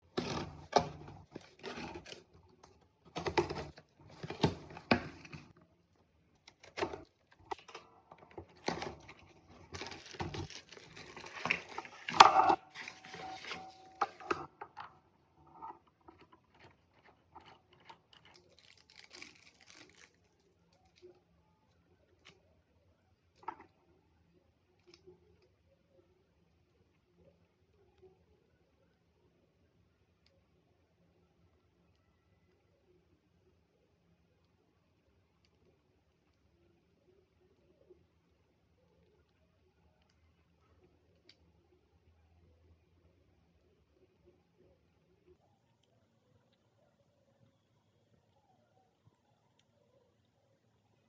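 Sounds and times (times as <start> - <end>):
packaging tearing and crinkling: 8.5 - 13.9, 18.2 - 20.2.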